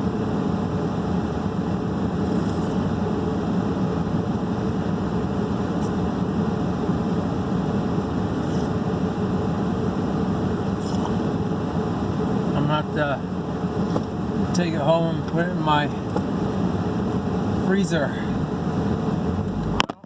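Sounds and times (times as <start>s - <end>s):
low mechanical hum: 0.0s - 20.0s.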